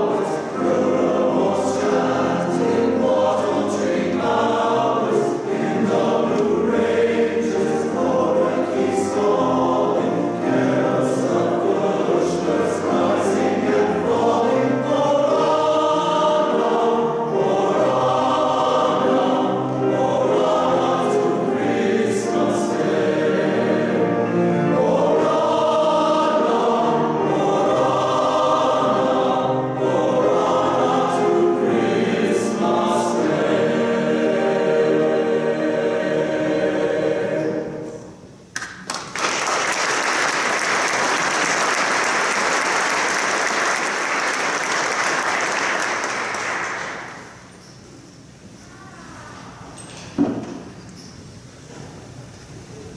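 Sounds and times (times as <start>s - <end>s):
men's chorus singing carol: 0.0s - 38.3s.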